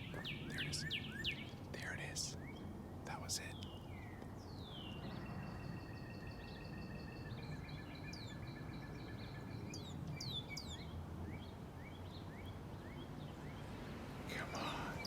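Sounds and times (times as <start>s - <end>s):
cardinal singing whistled notes: 0.0s - 3.9s, 14.3s - 15.0s.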